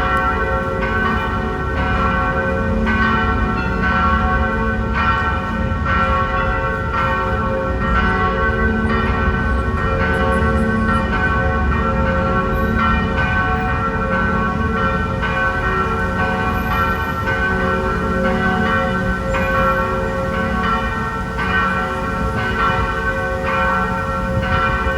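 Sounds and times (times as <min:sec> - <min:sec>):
church bells ringing: 0:00.0 - 0:24.9.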